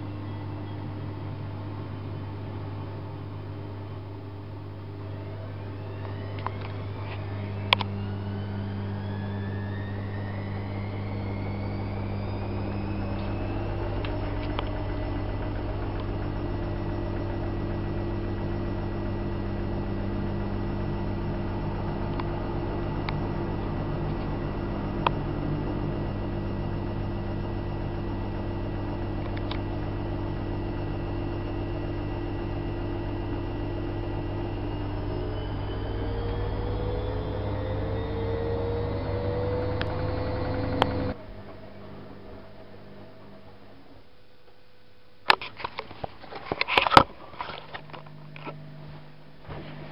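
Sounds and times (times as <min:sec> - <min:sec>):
washing machine drum motor whining: 0:05.1 - 0:44.0.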